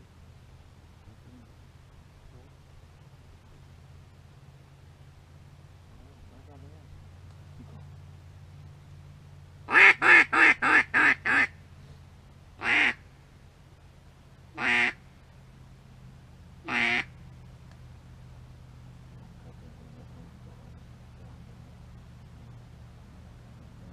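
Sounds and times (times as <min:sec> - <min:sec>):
duck quacking: 0:09.7 - 0:11.5, 0:12.6 - 0:13.0, 0:14.6 - 0:15.0, 0:16.6 - 0:17.1.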